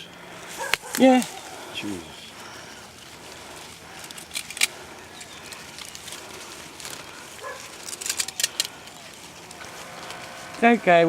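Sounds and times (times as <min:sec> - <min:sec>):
plastic netting rustling: 0:00.3 - 0:11.0
scissors snipping: 0:07.4 - 0:08.8.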